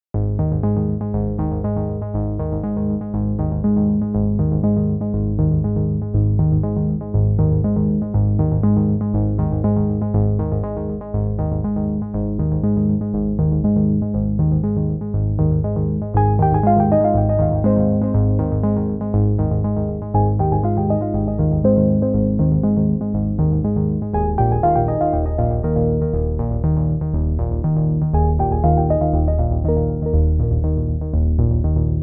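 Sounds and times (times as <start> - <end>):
synthesizer and keyboard music: 0.2 - 32.0.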